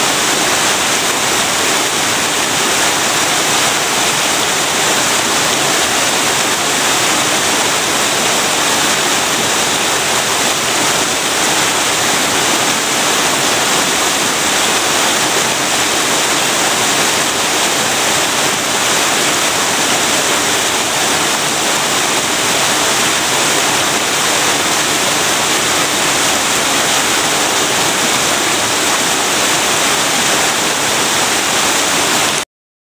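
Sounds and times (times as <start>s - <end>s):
waterfall rushing: 0.0s - 32.4s.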